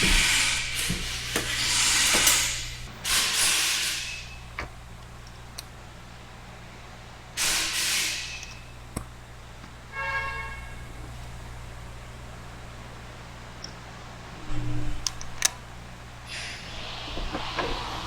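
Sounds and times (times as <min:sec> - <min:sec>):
hissing sprays: 0:07.4 - 0:08.6, 0:16.3 - 0:18.0.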